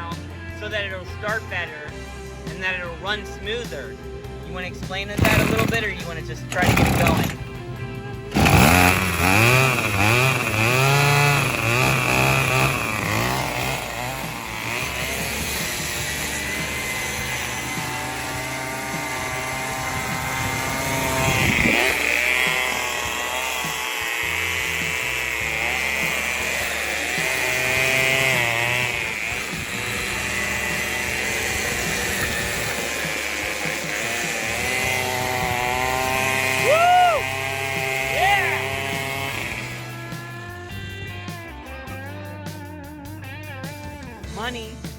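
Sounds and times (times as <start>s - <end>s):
string trimmer engine revving: 0.0s - 44.9s.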